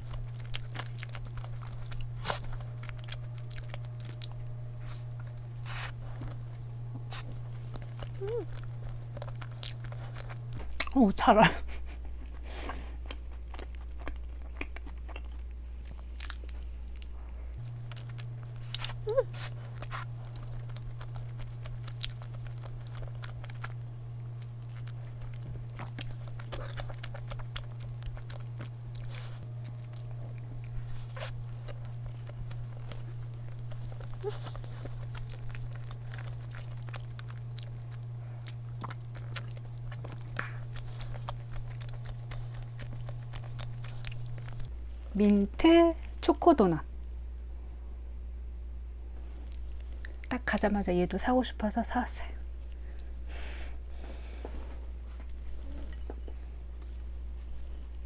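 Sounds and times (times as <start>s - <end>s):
chewing and biting doughnut: 0.0s - 11.0s, 11.8s - 44.8s
steady low hum: 0.0s - 58.0s.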